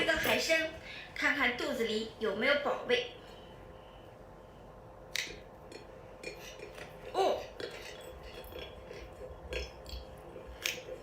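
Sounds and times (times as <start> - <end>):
utensils clinking against a dish: 5.8 - 10.1.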